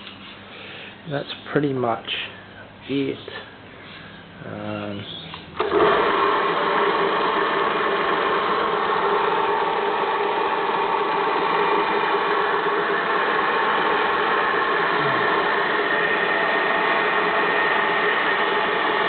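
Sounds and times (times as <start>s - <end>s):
belt sander running: 5.6s - 19.0s.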